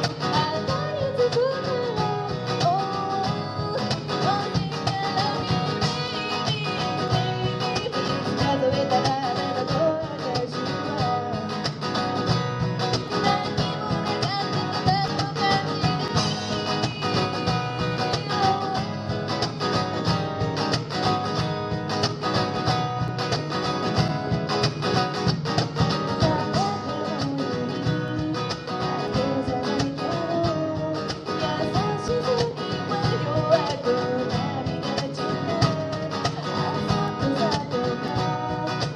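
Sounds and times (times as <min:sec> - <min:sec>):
person singing: 0:00.0 - 0:11.7, 0:13.0 - 0:19.2, 0:26.0 - 0:38.9
acoustic guitar: 0:00.0 - 0:38.9
cajon beat: 0:00.0 - 0:38.9.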